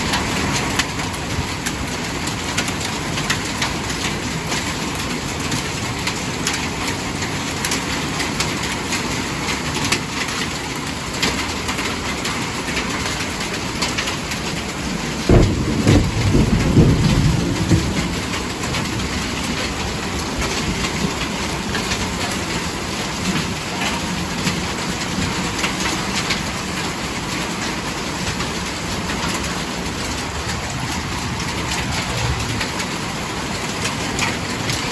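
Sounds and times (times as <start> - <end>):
heavy rain pouring: 0.0 - 34.9
low rumble: 29.8 - 34.2.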